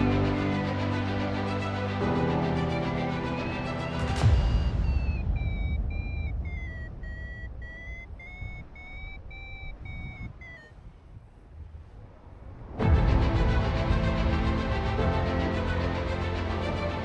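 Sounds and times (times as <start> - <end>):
variometer beeping high tones: 3.9 - 10.8
wind buffeting microphone: 4.1 - 14.7.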